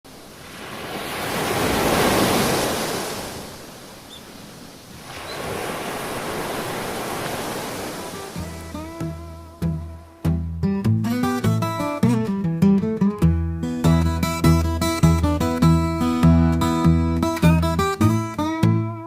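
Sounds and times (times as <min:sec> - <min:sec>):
ocean waves breaking and washing: 0:00.0 - 0:10.2.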